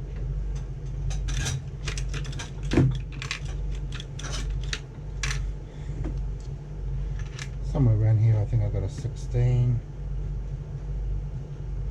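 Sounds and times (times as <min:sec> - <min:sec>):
steady low hum: 0:00.0 - 0:11.9
small hard items clattering: 0:01.8 - 0:05.4.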